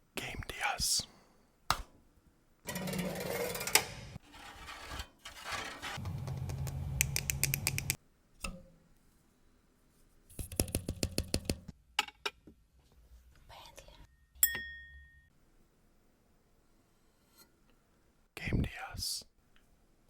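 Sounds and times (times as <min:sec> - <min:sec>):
scraping and rustling: 0:04.2 - 0:06.1.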